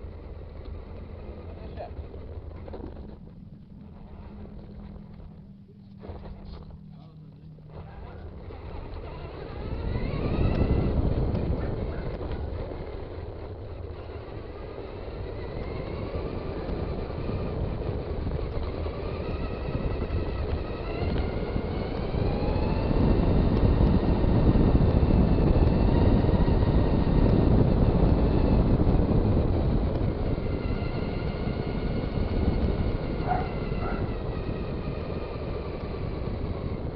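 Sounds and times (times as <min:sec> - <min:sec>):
electric motor and gears whining: 0:00.0 - 0:36.9
wind on microphone: 0:07.5 - 0:36.9.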